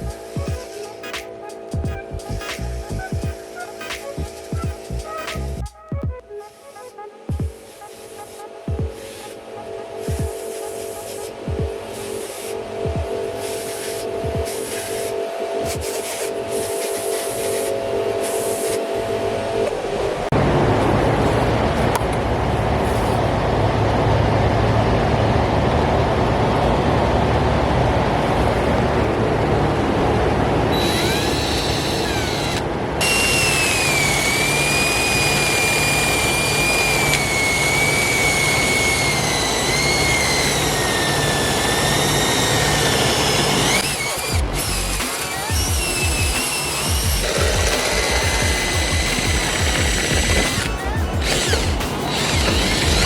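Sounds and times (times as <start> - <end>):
high wavering whine: 0.0 - 53.0
angle grinder grinding metal: 30.7 - 53.0.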